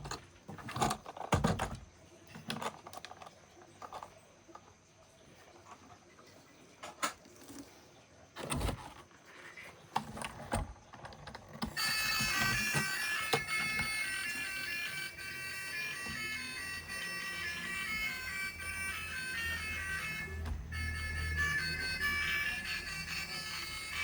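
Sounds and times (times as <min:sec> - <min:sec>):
toys knocking and thumping: 0:00.0 - 0:03.2.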